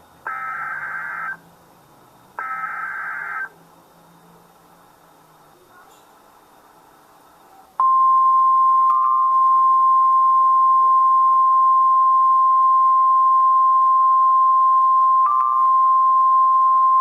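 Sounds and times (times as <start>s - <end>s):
faint hiss: 3.6s - 7.8s.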